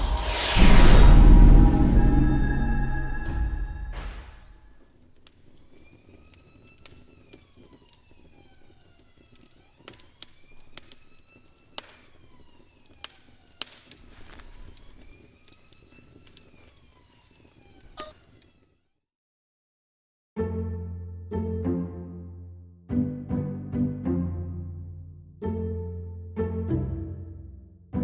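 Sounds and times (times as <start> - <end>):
sharp clicks: 5.0 - 18.6
siren wailing: 5.5 - 18.5.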